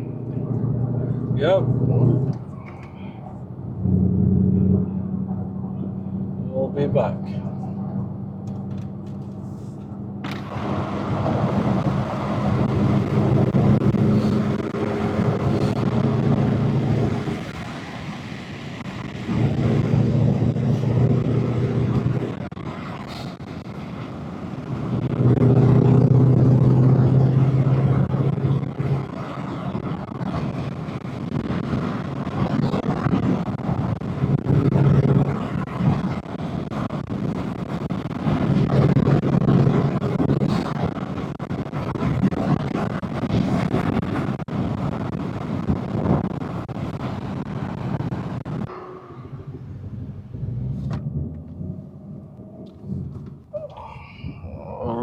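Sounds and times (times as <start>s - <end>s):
car engine cruising: 0.0s - 55.0s.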